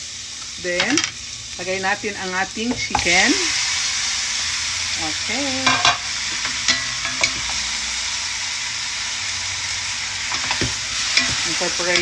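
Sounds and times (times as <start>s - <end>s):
chicken sizzling in oil: 0.0s - 12.0s
utensil knocking against pan: 5.6s - 7.6s, 10.3s - 12.0s.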